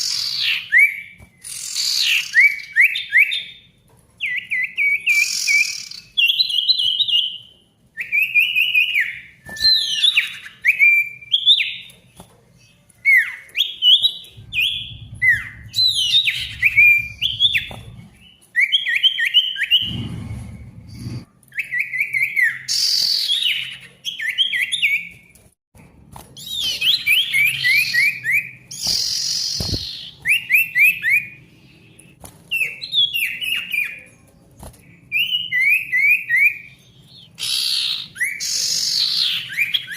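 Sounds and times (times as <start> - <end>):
songbird singing whistled notes: 0.0 - 11.9, 12.6 - 25.2, 26.4 - 34.2, 34.9 - 39.9
harsh rasping bird notes: 19.6 - 21.3.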